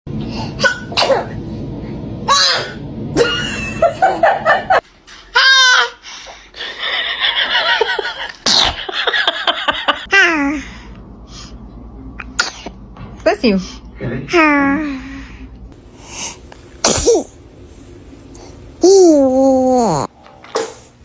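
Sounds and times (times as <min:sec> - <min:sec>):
laughter: 0:03.2 - 0:04.8, 0:06.6 - 0:10.1.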